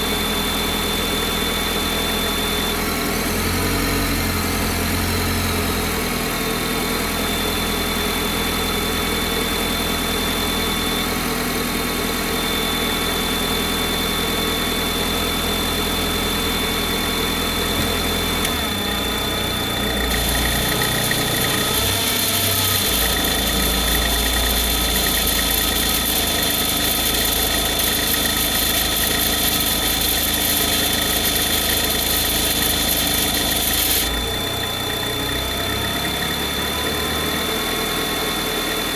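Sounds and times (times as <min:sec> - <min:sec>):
engine idling with high-pitched whine: 0:00.0 - 0:38.9.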